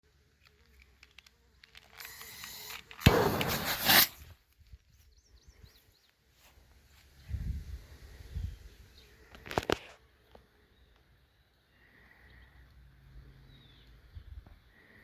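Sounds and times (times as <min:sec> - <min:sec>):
smoke device rushing hiss: 0:02.1 - 0:04.2.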